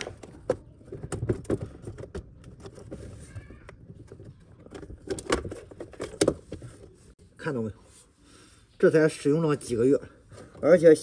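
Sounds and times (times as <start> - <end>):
plastic parts clicking and tapping: 0.0 - 6.8.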